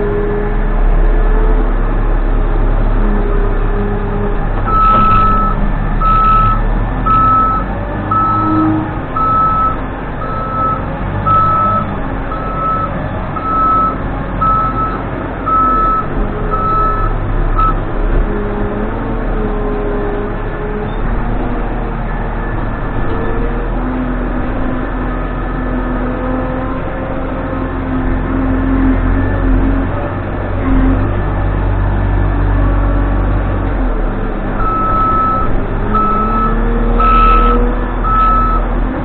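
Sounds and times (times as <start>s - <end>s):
diesel engine running: 0.0s - 39.0s
reverse alarm beeping: 4.7s - 17.8s, 34.6s - 38.6s.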